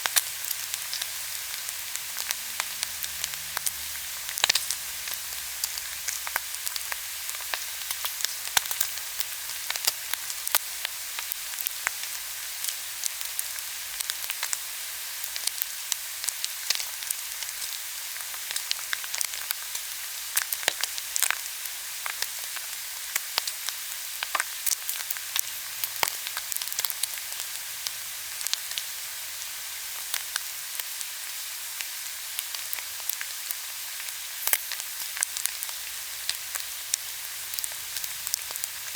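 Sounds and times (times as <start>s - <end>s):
crackles and pops: 0.0s - 14.6s, 15.2s - 28.9s, 31.8s - 38.9s
frying pan sizzling: 0.0s - 38.9s.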